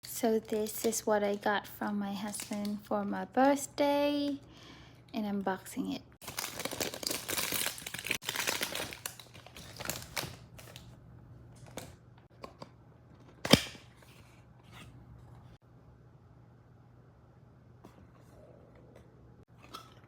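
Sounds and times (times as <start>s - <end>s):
wrapping torn and crinkled: 6.2s - 10.9s.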